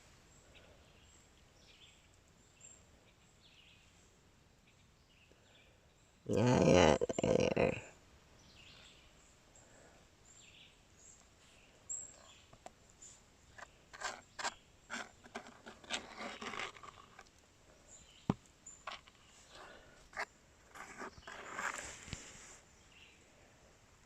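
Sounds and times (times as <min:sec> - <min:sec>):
stones clicking and rattling: 0:13.6 - 0:17.4.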